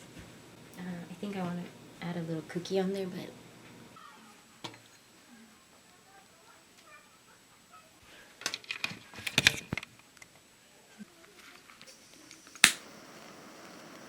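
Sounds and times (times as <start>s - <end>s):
faint steady hiss: 0.0s - 14.0s
sharp click: 12.6s - 12.8s.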